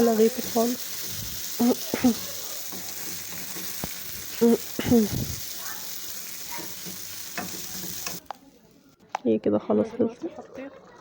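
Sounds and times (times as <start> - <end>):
garlic sizzling in hot oil: 0.0 - 9.0
voices: 1.6 - 2.8, 4.3 - 11.0.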